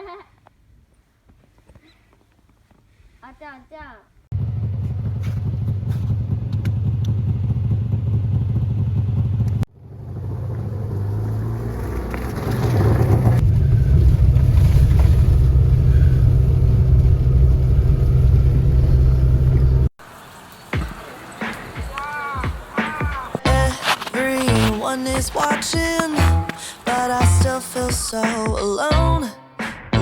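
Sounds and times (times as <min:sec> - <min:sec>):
two-stroke engine running: 0:04.4 - 0:13.4.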